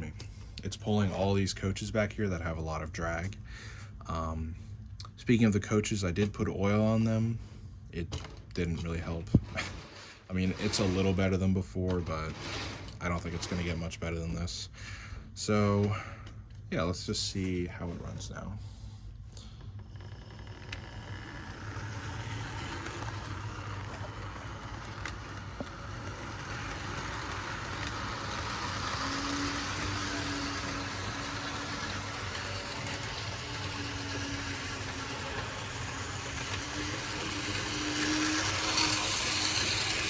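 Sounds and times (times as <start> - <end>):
steady low hum: 0.0 - 40.0
model train motor whirring: 8.1 - 14.3, 19.4 - 40.0
wheels rattling on rails: 8.2 - 13.9, 20.4 - 40.0.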